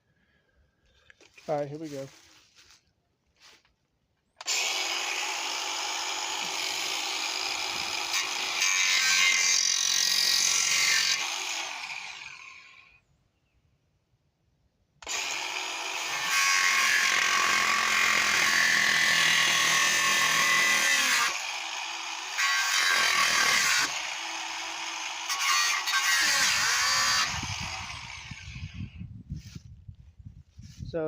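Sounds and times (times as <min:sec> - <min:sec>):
angle grinder cutting metal: 0:04.4 - 0:12.8, 0:15.0 - 0:28.8.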